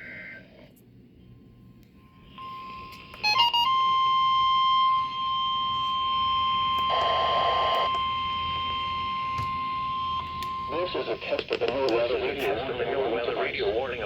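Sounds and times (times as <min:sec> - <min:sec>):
high warning alarm tone: 0:00.0 - 0:00.7, 0:01.4 - 0:14.0
short beeps: 0:02.2 - 0:11.4
burst of radio static: 0:10.6 - 0:14.0.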